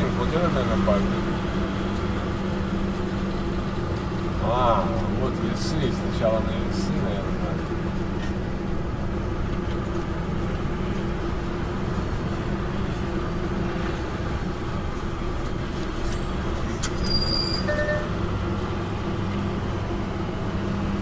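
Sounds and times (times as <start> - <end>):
diesel truck engine running: 0.0 - 21.0
short beeps: 17.0 - 18.2.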